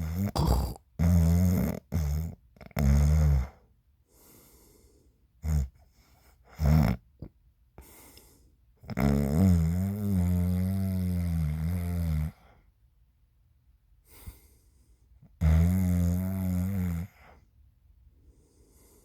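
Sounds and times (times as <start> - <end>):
person snoring: 0.0 - 3.5, 8.9 - 12.4, 15.4 - 17.2.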